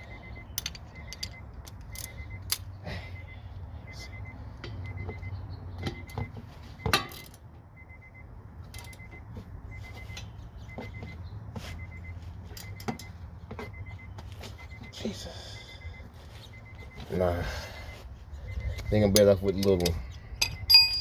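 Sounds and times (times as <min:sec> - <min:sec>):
faint short beeps: 0:00.0 - 0:19.2
ratchet and socket clinking: 0:00.5 - 0:02.7, 0:08.7 - 0:09.1, 0:19.1 - 0:21.0.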